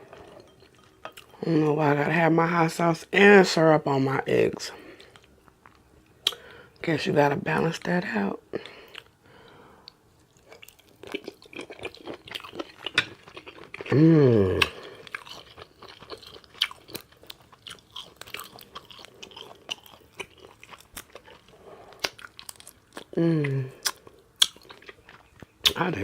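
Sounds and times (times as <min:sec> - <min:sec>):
wet open-mouth chewing: 0:09.9 - 0:13.9, 0:14.6 - 0:25.8.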